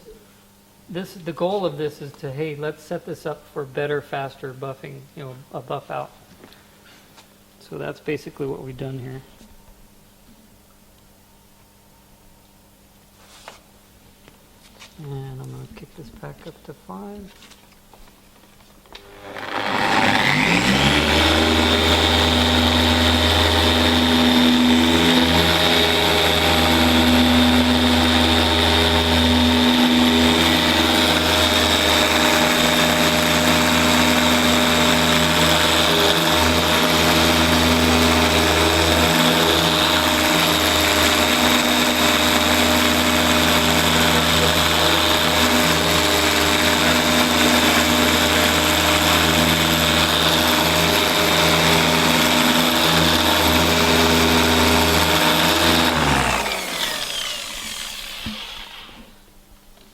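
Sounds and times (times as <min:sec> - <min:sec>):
polisher humming: 0:19.0 - 0:59.1.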